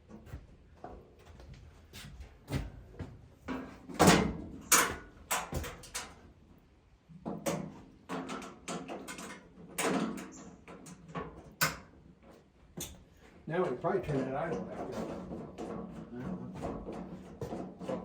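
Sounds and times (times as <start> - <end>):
tools and parts clanking: 7.4 - 11.9.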